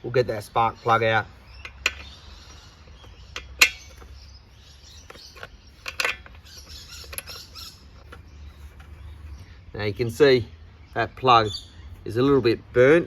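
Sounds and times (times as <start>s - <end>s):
sharp metal clicks and knocks: 0.9s - 9.0s.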